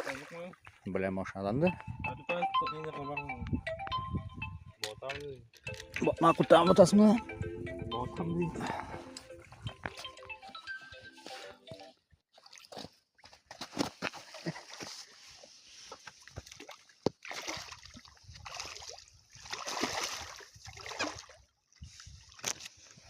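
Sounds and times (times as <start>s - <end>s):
water splashing and sloshing: 0.0s - 1.0s, 12.3s - 23.0s.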